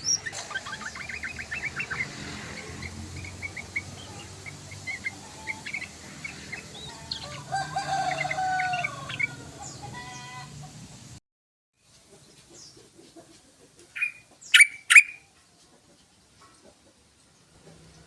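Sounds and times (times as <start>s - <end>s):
bird chirps and trills: 0.0s - 10.3s, 13.9s - 15.3s
rooster crowing: 6.6s - 10.6s.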